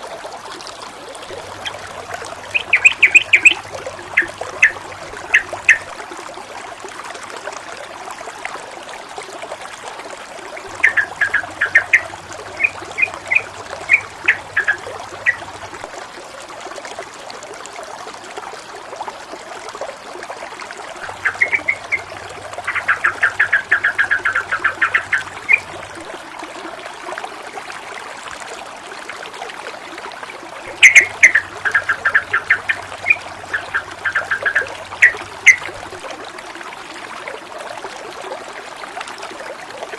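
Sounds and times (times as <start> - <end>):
babbling running water: 0.9 - 6.2, 10.4 - 15.9, 20.6 - 26.2
rapid bird chirping: 1.4 - 5.9, 10.7 - 15.5, 21.0 - 25.8, 30.7 - 35.8.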